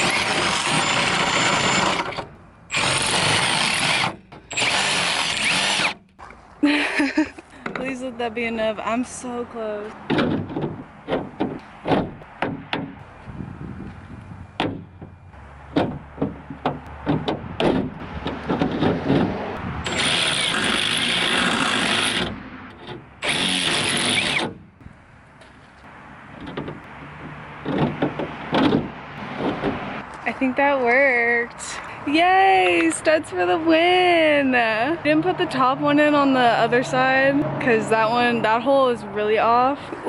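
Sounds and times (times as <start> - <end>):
power drill running: 0.0 - 6.0, 19.8 - 22.3, 23.2 - 24.5.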